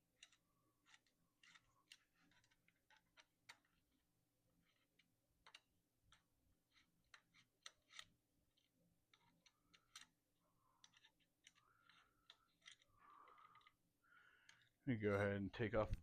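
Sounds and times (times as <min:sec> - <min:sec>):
small clicks of bike parts and tools: 0:10.8 - 0:13.8.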